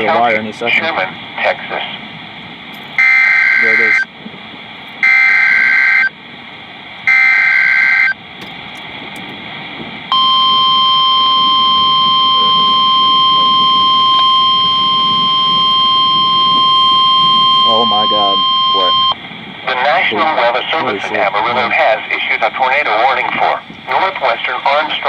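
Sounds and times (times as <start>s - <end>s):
digital data tones: 2.8s - 4.1s, 10.1s - 19.2s
steady alarm tone: 2.8s - 4.1s, 5.0s - 6.2s, 7.0s - 8.2s, 10.1s - 19.2s.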